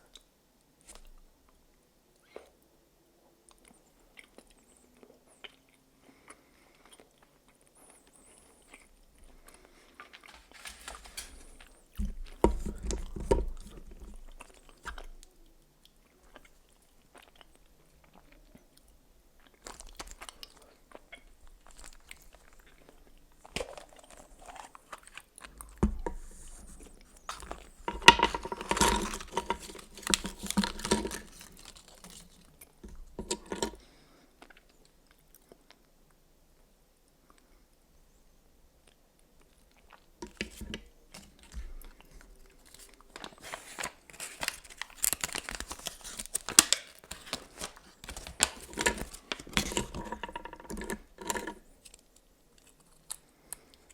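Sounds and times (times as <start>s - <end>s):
chewing crunchy chocolate: 3.5s - 35.9s, 38.8s - 53.9s.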